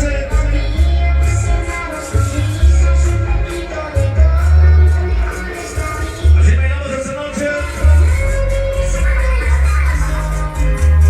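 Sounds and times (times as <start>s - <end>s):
bachata music with heavy bass: 0.0s - 11.0s.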